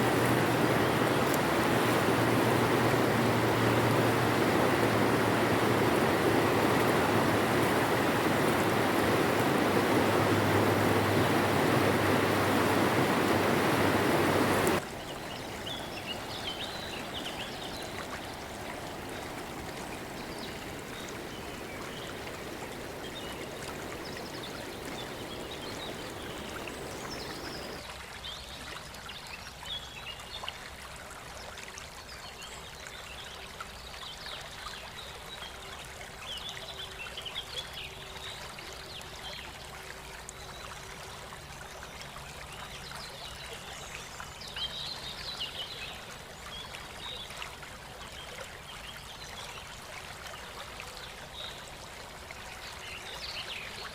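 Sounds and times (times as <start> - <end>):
river rushing over stones: 0.0 - 27.8
stream trickling: 0.0 - 53.9.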